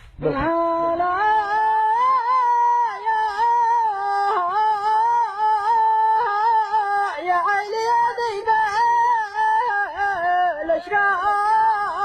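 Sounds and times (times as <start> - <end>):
man singing unaccompanied: 0.2 - 12.0.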